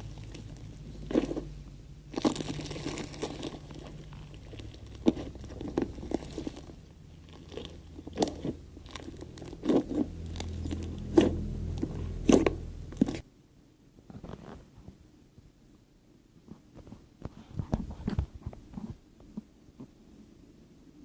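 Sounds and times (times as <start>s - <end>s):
slime squishing and popping: 0.0s - 11.4s
low steady hum: 0.0s - 21.0s.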